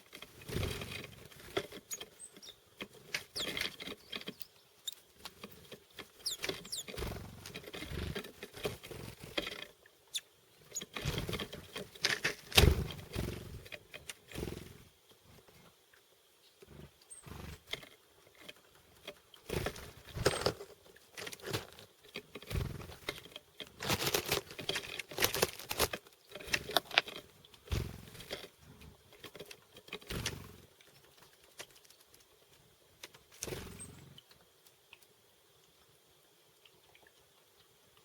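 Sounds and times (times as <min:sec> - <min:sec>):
wings fluttering: 0:00.0 - 0:15.4, 0:17.2 - 0:17.9, 0:19.4 - 0:27.0, 0:27.6 - 0:28.4, 0:29.9 - 0:32.3, 0:33.1 - 0:34.2
birds pecking and tapping at seeds: 0:00.0 - 0:38.0
faint high bird chirps: 0:01.9 - 0:02.7, 0:03.3 - 0:05.1, 0:06.2 - 0:07.0, 0:16.4 - 0:17.3, 0:33.6 - 0:34.2.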